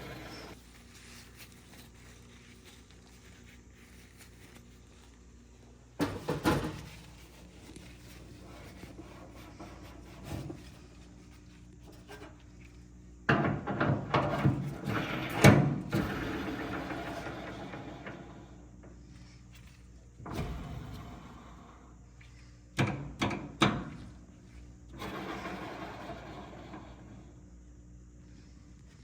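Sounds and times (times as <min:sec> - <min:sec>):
clothes dryer knocks and clatter: 0:06.0 - 0:07.0, 0:13.3 - 0:18.3, 0:22.8 - 0:24.2.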